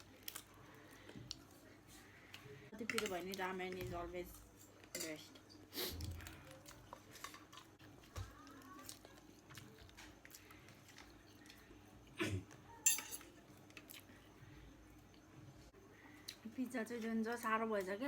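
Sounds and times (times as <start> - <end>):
cutlery clinking on a dish: 12.8 - 13.4.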